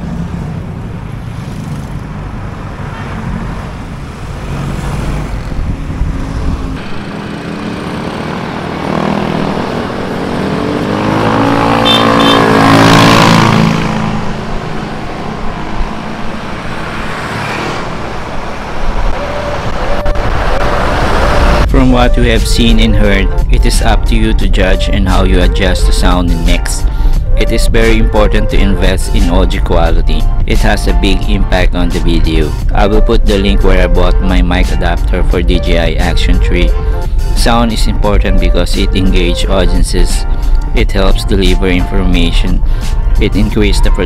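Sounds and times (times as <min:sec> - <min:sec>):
vehicle engine passing by: 0:00.0 - 0:21.7
road traffic noise: 0:00.0 - 0:44.0.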